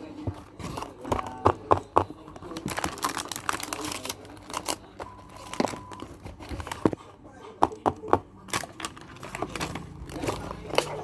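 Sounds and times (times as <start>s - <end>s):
packaging crinkling and tearing: 2.4s - 6.9s, 8.5s - 11.0s.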